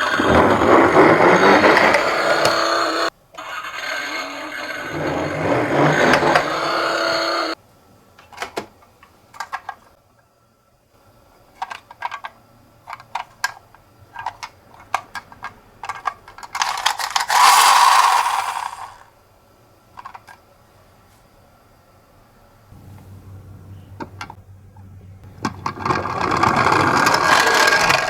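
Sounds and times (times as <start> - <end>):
toy car clicking and clattering: 0.0 - 7.6, 8.2 - 9.9, 11.5 - 19.1, 20.0 - 20.4, 25.3 - 28.0
toy car rolling on hard surface: 0.0 - 7.6, 14.1 - 19.1, 25.3 - 28.0.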